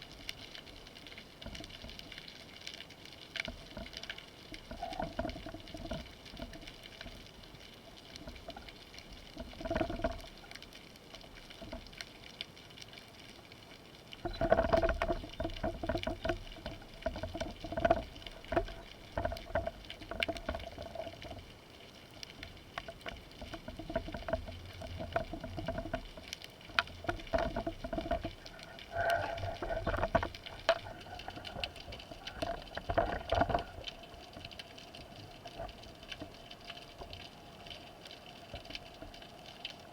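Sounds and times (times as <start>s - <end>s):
underwater crackle of clicks: 0.0s - 39.9s
water swishing against housing: 26.9s - 33.8s.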